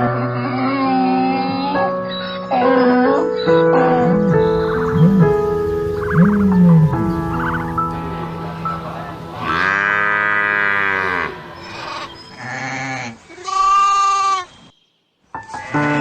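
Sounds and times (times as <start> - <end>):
background music: 0.0 - 13.3
farm animals calling: 2.2 - 14.7
animal bleat: 9.4 - 14.5.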